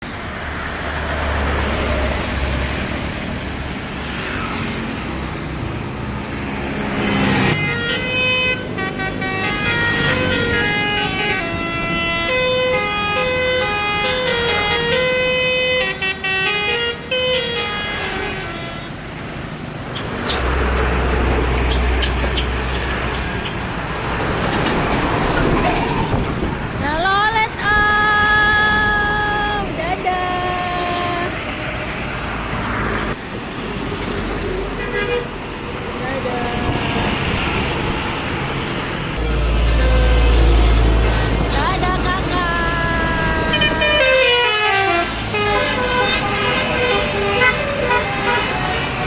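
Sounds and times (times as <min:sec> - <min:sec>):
road and engine noise: 0:00.0 - 0:49.0
bus musical air horn: 0:07.0 - 0:19.1, 0:34.8 - 0:35.3, 0:39.2 - 0:49.0.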